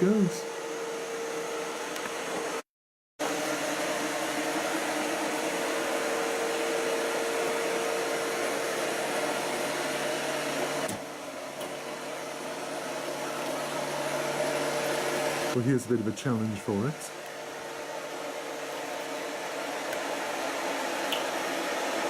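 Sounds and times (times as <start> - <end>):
robot vacuum cleaner whirring: 3.2 - 15.6.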